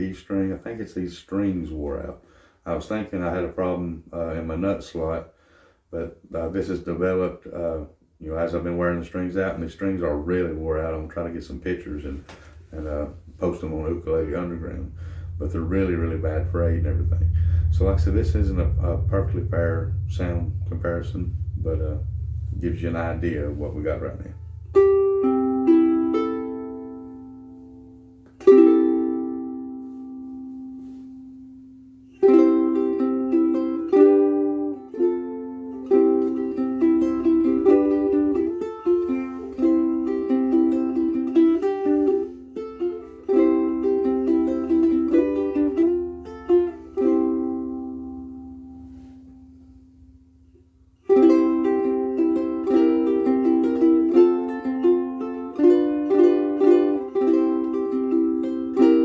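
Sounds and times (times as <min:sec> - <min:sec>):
ukulele strummed and picked: 0:11.7 - 0:31.3, 0:32.1 - 0:49.2, 0:51.0 - 0:59.0.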